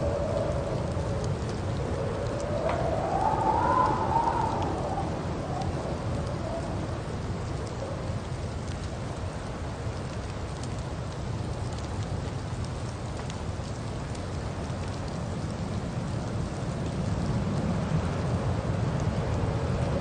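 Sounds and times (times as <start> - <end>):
faint ticks: 0.1 - 20.0
tyres on wet snowy road: 6.7 - 20.0.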